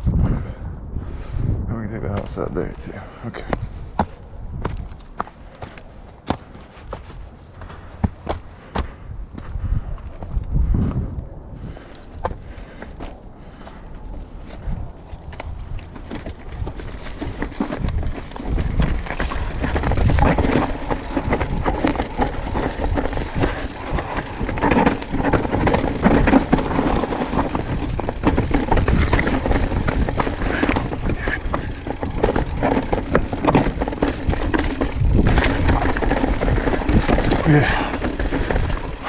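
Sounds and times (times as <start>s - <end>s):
bike rattling and knocking: 3.4s - 9.0s, 11.7s - 39.0s
bike tyres rumbling over rock: 14.4s - 39.0s.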